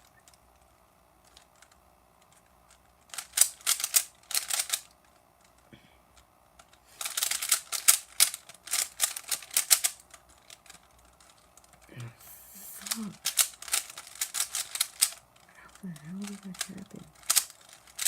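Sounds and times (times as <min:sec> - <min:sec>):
plastic puzzle cube layers clicking: 0:00.2 - 0:05.6, 0:06.6 - 0:11.9, 0:12.7 - 0:18.0.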